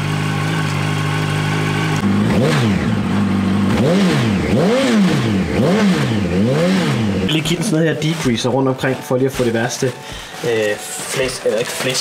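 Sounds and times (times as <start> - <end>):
motorcycle engine idling: 0.0 - 8.5
tone rising and falling in pitch: 6.6 - 9.0.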